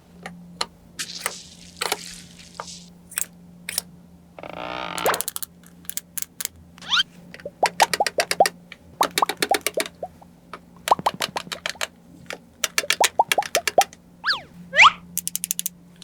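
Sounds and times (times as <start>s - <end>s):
quick sharp clicks: 7.6s - 10.1s, 12.6s - 15.7s.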